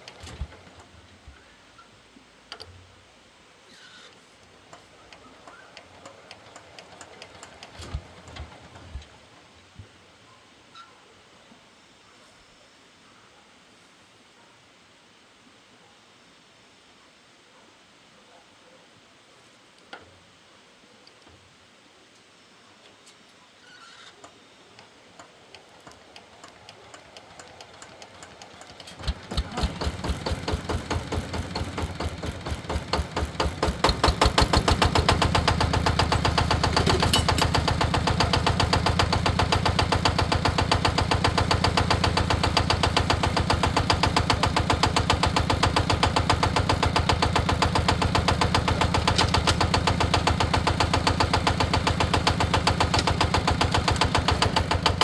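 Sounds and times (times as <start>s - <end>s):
engine starting and idling: 0.0s - 1.0s, 4.6s - 9.5s, 25.1s - 55.0s.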